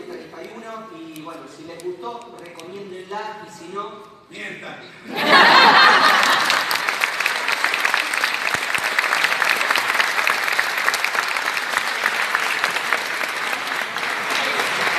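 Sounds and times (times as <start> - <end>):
audience applauding: 5.4 - 14.9.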